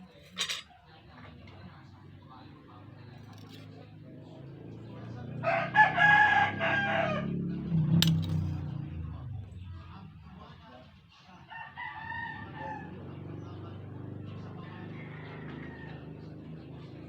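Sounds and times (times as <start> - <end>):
rooster crowing: 5.4 - 7.4, 11.5 - 13.2, 14.6 - 16.4.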